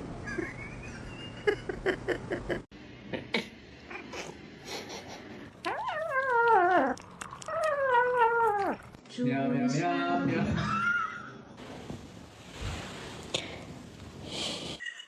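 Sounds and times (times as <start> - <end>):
cat meowing: 5.6 - 8.9.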